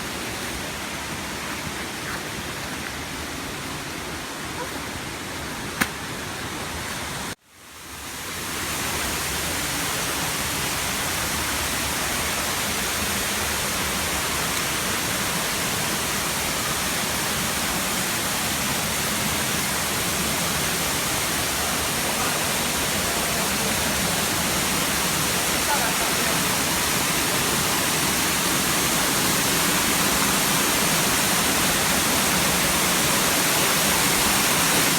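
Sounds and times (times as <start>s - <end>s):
waterfall rushing: 8.1s - 34.9s.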